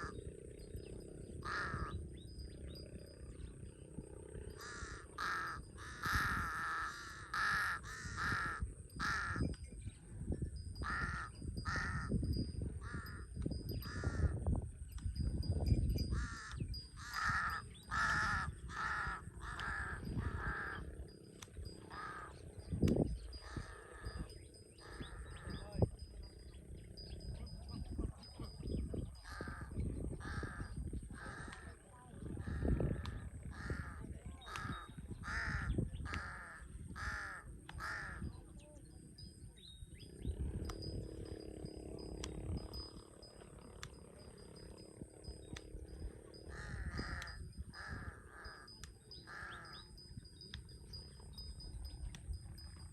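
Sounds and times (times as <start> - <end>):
crow cawing: 1.4 - 2.0, 4.5 - 9.5, 10.8 - 14.4, 16.1 - 21.0, 21.9 - 22.5, 23.4 - 25.5, 29.2 - 38.4, 46.4 - 50.4.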